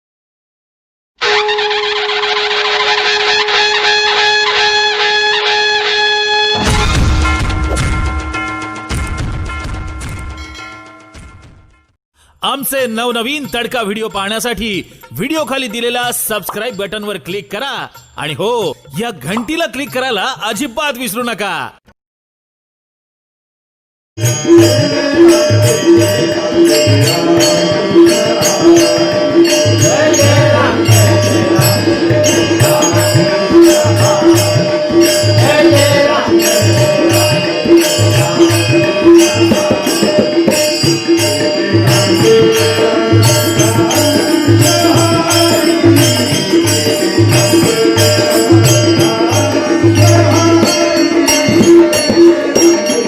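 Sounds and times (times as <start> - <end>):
tabla beat: 6.5 - 21.4, 24.2 - 53.0
quick high percussion strokes: 24.2 - 53.0.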